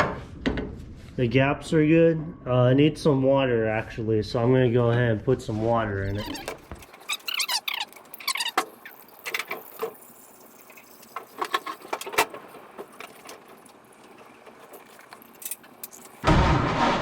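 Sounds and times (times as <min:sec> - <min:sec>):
brief squeaks: 0:06.2 - 0:09.0.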